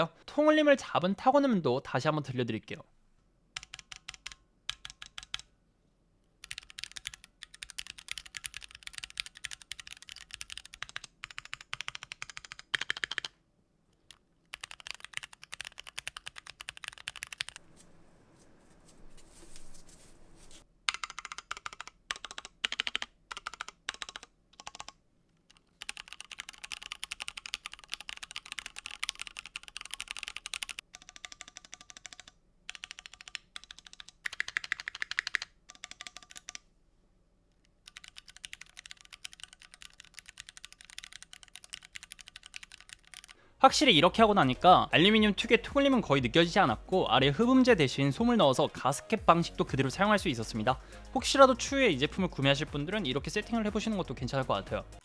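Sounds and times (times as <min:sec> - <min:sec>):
mechanical keyboard typing: 0:03.6 - 0:05.5, 0:06.4 - 0:13.3, 0:14.1 - 0:17.6, 0:20.9 - 0:36.6, 0:37.8 - 0:43.4.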